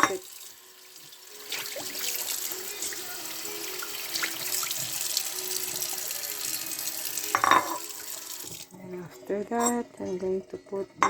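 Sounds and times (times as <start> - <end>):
tap running into sink: 0.0 - 0.3, 3.7 - 8.7.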